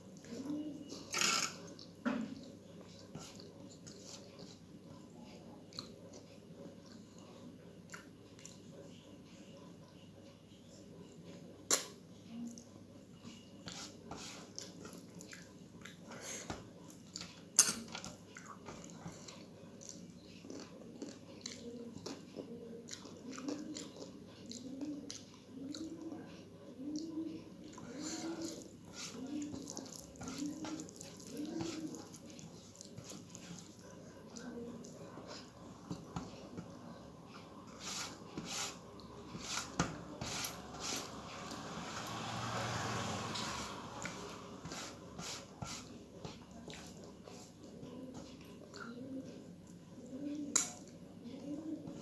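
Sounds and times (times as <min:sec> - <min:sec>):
chewing and wet mouth sounds: 0:00.0 - 0:08.7, 0:14.4 - 0:16.2, 0:16.8 - 0:39.3, 0:45.8 - 0:52.0
person chewing: 0:18.3 - 0:25.9, 0:27.6 - 0:36.5.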